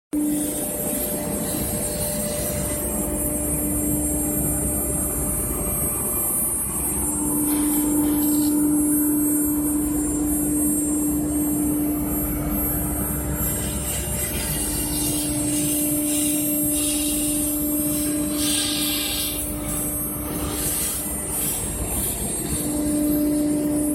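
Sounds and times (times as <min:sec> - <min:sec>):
spindle motor hum and whine: 0:00.1 - 0:23.9
cutter carving foam: 0:00.2 - 0:04.5, 0:11.0 - 0:23.9.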